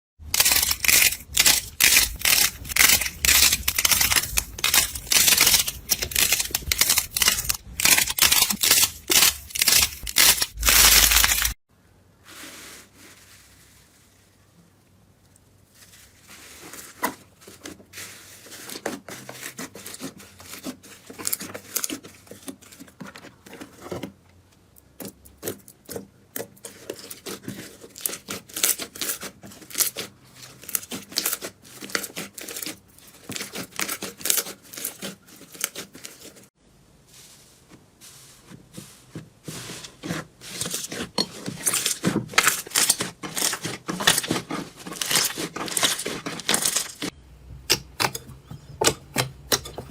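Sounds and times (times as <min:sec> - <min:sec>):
slime crackling and popping: 0:00.5 - 0:11.6.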